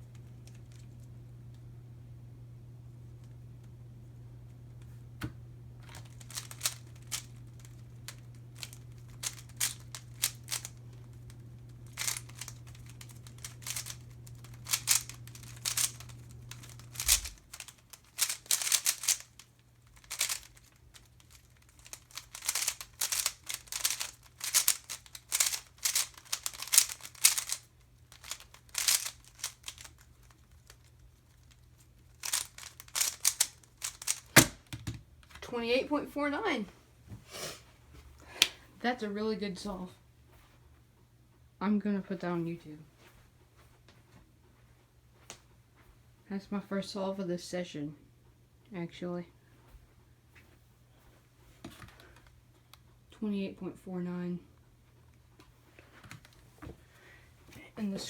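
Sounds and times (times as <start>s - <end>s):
low steady hum: 0.0s - 58.0s
puzzle cube plastic clicking: 5.9s - 34.9s.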